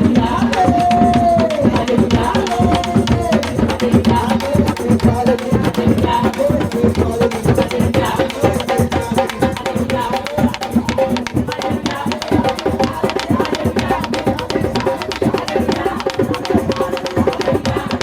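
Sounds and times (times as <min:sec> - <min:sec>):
music with fast drum beats: 0:00.0 - 0:18.0.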